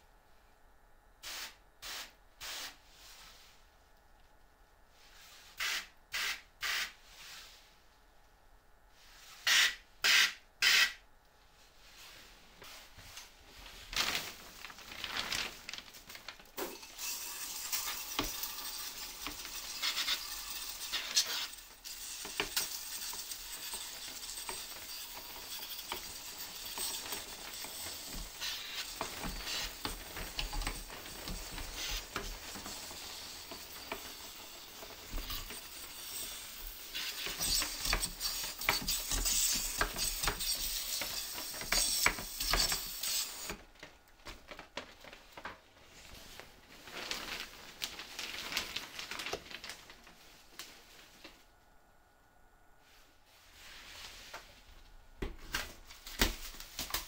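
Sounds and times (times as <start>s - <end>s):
spray cleaner squirts: 5.6s - 6.9s, 9.5s - 11.0s
hissing and rubbing: 17.2s - 43.6s.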